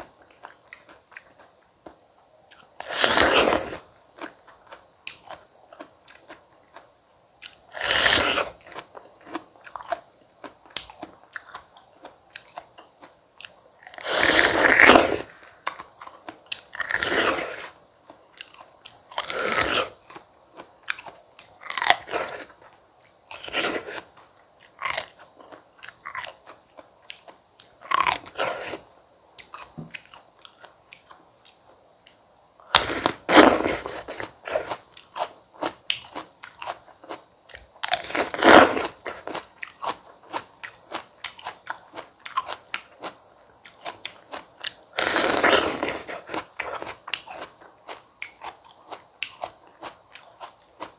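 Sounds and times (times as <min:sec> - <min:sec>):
crunching bites of fruit: 0:18.4 - 0:22.5, 0:32.7 - 0:50.9.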